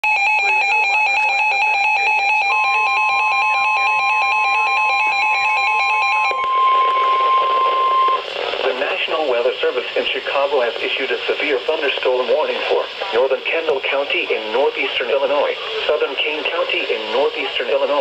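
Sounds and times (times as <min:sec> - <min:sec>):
repeating electronic alert tones: 0:00.0 - 0:08.2
steady warning tone: 0:00.0 - 0:08.3.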